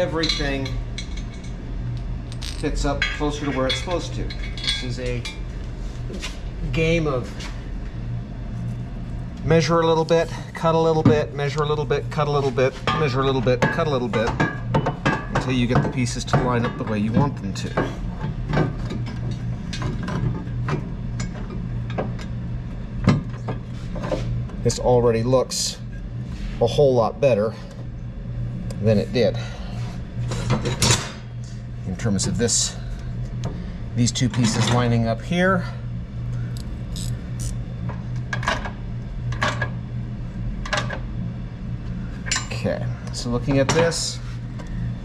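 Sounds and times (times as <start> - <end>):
steady low hum: 0.0 - 45.0
metal tools clinking: 2.3 - 5.1
hand ratchet clicking: 36.6 - 37.5.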